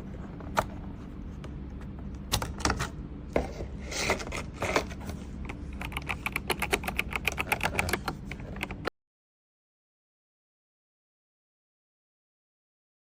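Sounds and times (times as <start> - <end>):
mechanical keyboard typing: 5.5 - 8.9.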